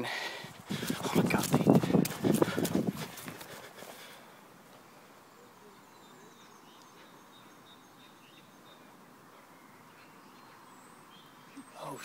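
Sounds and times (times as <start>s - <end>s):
faint bird chirps: 4.9s - 12.0s.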